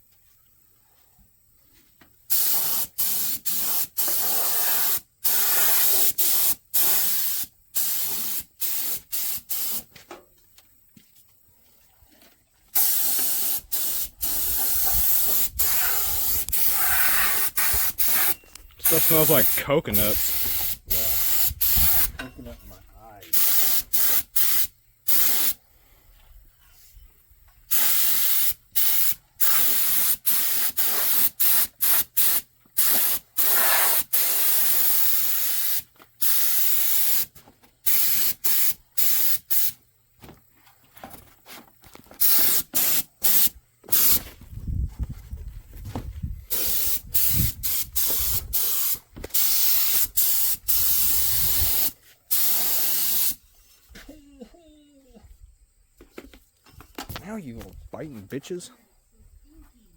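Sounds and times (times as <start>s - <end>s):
spray paint can hissing: 2.3s - 9.9s, 12.8s - 22.1s, 23.3s - 25.6s, 27.7s - 39.8s, 42.2s - 44.2s, 46.5s - 53.4s.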